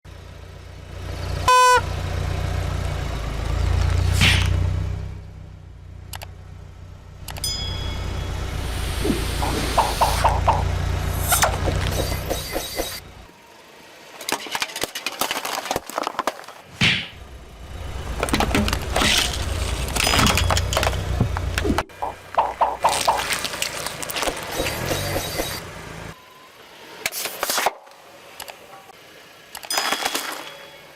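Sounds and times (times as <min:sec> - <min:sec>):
low engine rumble: 0:00.1 - 0:14.1, 0:17.1 - 0:26.2
objects cracking and breaking: 0:14.2 - 0:16.7, 0:22.7 - 0:24.6.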